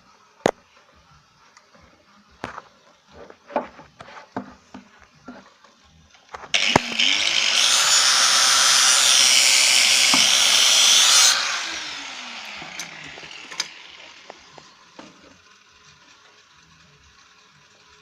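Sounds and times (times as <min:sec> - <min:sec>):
power tool on metal: 0:06.5 - 0:15.1.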